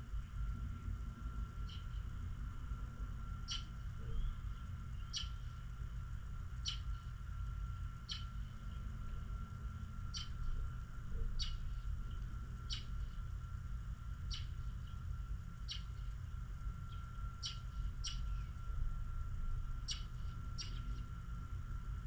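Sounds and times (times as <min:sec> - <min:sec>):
small bird chirping: 0:01.6 - 0:02.0, 0:03.4 - 0:05.6, 0:06.6 - 0:07.2, 0:08.0 - 0:08.8, 0:10.1 - 0:10.6, 0:11.4 - 0:11.8, 0:12.6 - 0:13.2, 0:14.3 - 0:15.0, 0:15.6 - 0:16.1, 0:16.8 - 0:18.6, 0:19.8 - 0:21.0.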